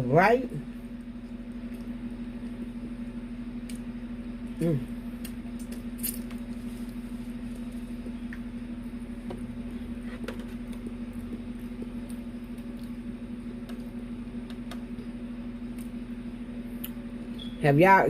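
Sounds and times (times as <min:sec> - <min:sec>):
steady low hum: 0:00.0 - 0:18.0
person eating clicks and smacks: 0:05.2 - 0:06.4, 0:10.3 - 0:15.0.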